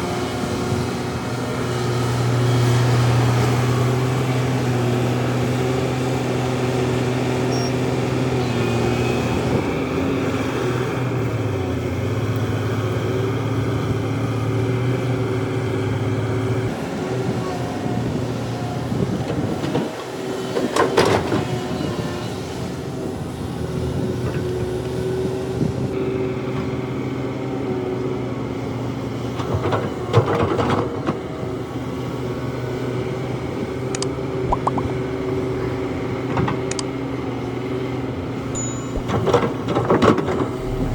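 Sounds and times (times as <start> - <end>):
excavator diesel engine running: 40.3 - 40.9.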